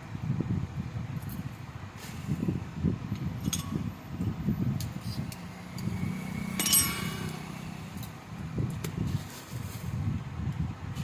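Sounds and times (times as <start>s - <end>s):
metal knocks and clinks: 3.4s - 4.4s, 5.8s - 8.2s.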